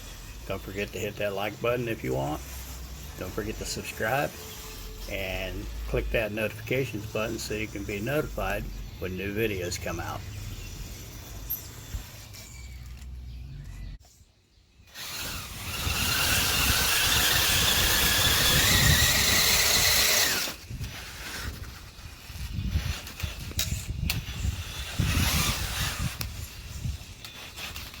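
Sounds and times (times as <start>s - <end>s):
rc truck motor whine: 0.0s - 8.7s, 14.9s - 21.5s, 22.8s - 28.0s
rc truck driving noise: 0.0s - 14.0s, 14.9s - 28.0s.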